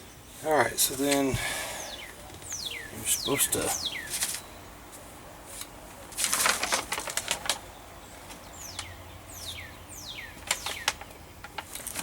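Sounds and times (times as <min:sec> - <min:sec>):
whistled bird calls: 0:01.8 - 0:04.5, 0:08.5 - 0:11.2
rustling: 0:04.1 - 0:08.4.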